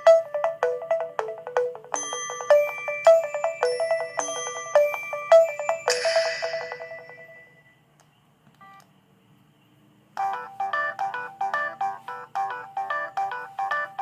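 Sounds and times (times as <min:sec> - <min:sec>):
phone ringtone melody: 0:00.0 - 0:07.8, 0:10.2 - 0:14.0.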